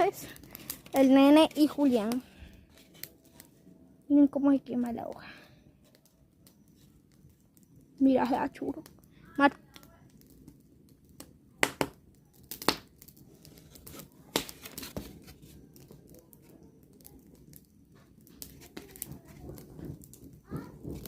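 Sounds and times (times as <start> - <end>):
campfire crackling: 0.0 - 21.0.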